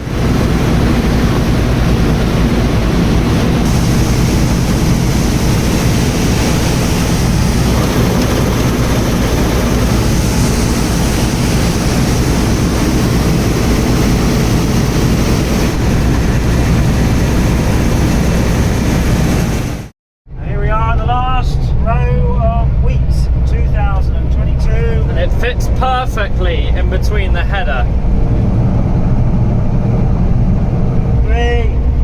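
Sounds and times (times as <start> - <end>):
threshing machinery rushing: 0.0 - 19.9
combine harvester engine drone: 0.0 - 32.0.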